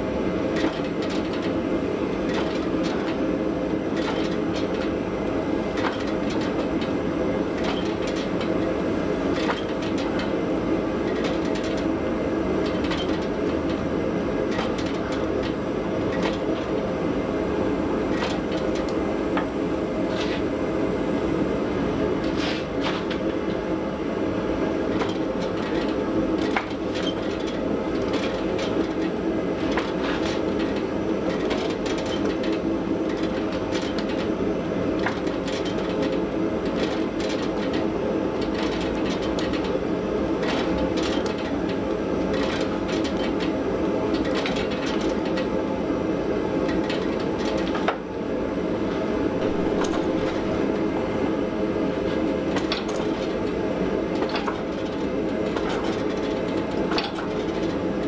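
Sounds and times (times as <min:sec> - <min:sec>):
machine running hum: 0:49.0 - 0:54.0
irregular clicks and knocks: 0:49.4 - 0:51.2.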